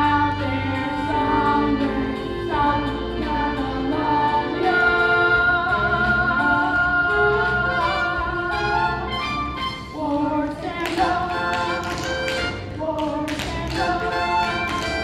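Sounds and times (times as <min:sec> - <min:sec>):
show-tune backing music: 0:00.0 - 0:15.0
sharp percussive taps: 0:10.8 - 0:13.9.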